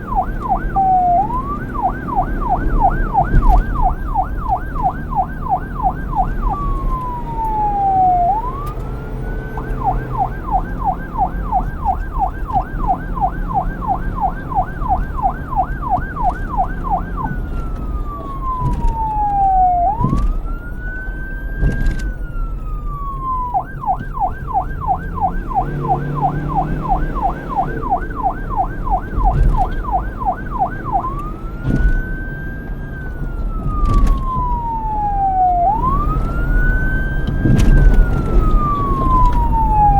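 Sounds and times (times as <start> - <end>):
low road rumble: 0.0 - 39.9
police siren yelp and wail: 0.0 - 39.9.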